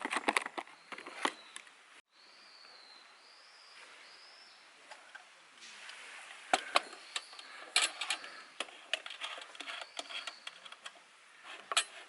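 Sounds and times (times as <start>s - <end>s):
camp gear clicks and knocks: 0.0s - 1.8s, 6.5s - 12.0s.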